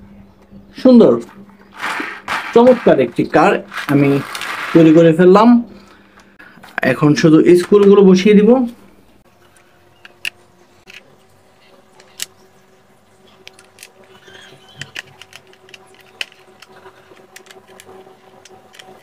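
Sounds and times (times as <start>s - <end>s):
faint steady hum: 0.0s - 19.0s
screws clicking into plastic: 13.5s - 19.0s.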